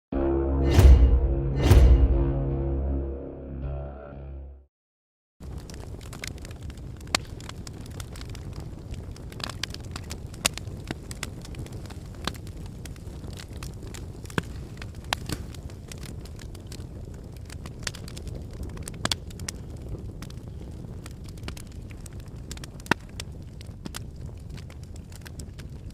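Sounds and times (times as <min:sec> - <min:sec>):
fire crackling and popping: 0:05.4 - 0:25.9
flames rushing: 0:05.4 - 0:25.9.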